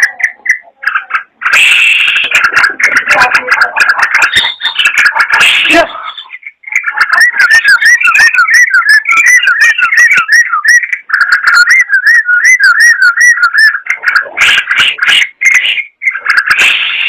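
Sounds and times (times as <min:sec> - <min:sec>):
bulbul whistling song: 0:03.8 - 0:17.0.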